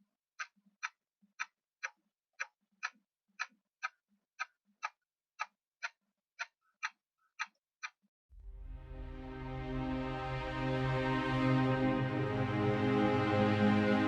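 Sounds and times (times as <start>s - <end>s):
clock ticking: 0.0s - 8.7s.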